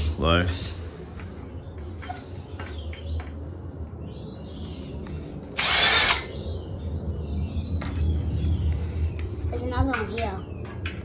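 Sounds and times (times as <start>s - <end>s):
electric screwdriver whirring: 5.6s - 6.4s.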